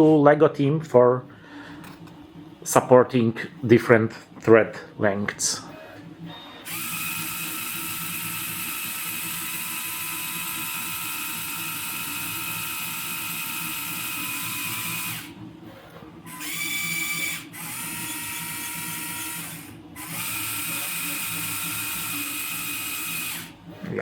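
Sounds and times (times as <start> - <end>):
toy electric motors whining: 6.6 - 15.4, 16.2 - 23.6.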